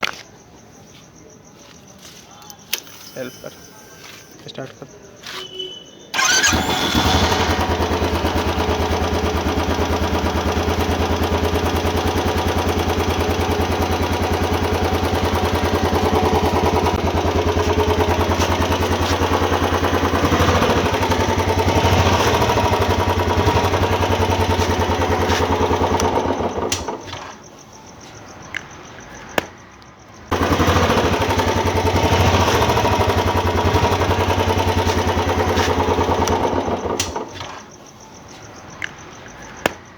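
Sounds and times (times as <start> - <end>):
motorcycle engine thumping: 6.1 - 27.4, 30.3 - 37.7.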